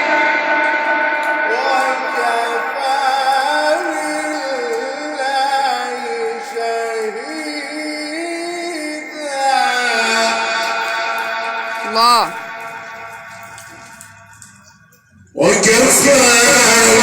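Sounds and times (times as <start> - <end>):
man reciting melodically: 1.5 - 10.9, 11.9 - 12.4, 15.3 - 17.0.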